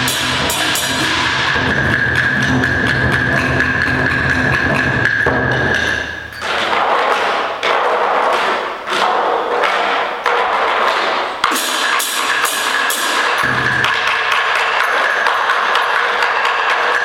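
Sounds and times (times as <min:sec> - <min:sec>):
cymbal crashes: 0:00.0 - 0:07.0, 0:11.4 - 0:16.1.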